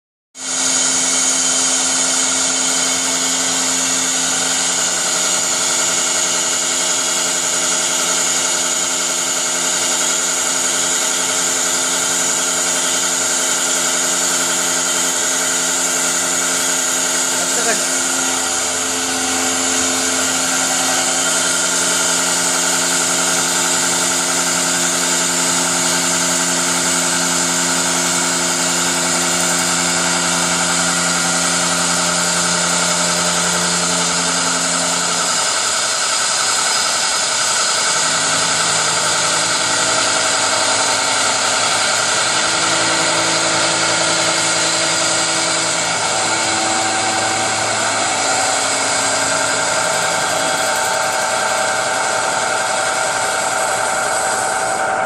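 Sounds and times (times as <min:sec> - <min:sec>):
lathe motor hum: 0:00.4 - 0:55.0
bright hiss of cutting: 0:08.0 - 0:54.6.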